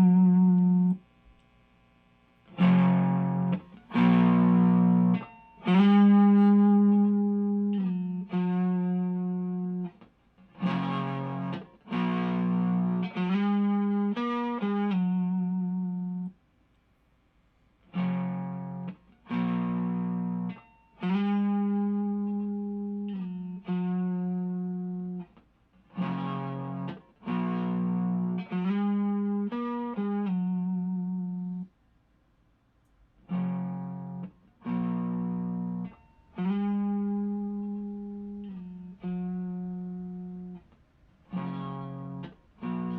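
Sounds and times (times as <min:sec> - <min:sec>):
overdriven electric guitar chords: 0:00.0 - 0:16.4, 0:17.9 - 0:31.7, 0:33.2 - 0:42.9.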